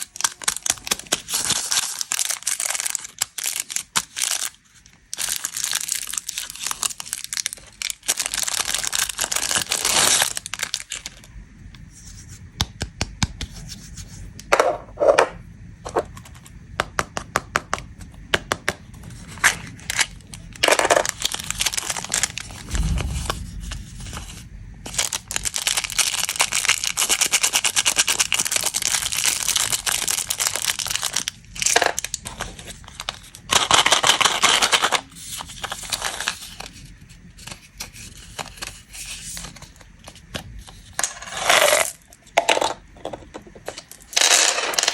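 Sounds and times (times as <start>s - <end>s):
plastic wrappers crinkling: 0.0s - 11.3s, 19.4s - 22.6s, 25.0s - 36.8s.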